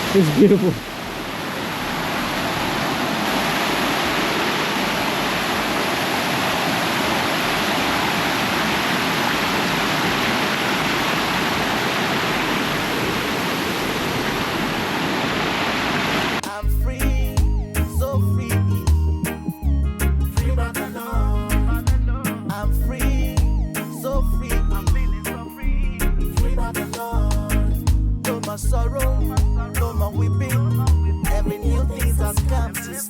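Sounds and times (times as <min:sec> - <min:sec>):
waterfall rushing: 0:00.0 - 0:16.4
music with a beat: 0:16.4 - 0:33.0.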